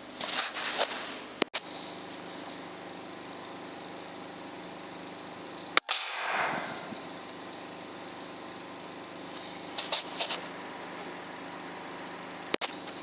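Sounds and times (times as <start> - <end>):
steady mechanical hum: 0.0 - 13.0
air rifle shot: 5.8 - 7.0.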